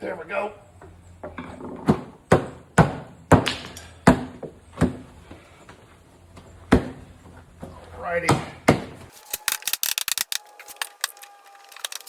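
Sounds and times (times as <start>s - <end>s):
hammer knocking on wooden barrel: 1.2s - 5.0s, 8.3s - 9.0s.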